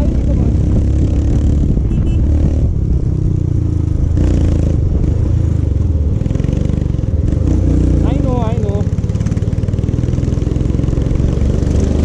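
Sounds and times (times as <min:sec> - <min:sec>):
wind noise: 0:00.0 - 0:06.3.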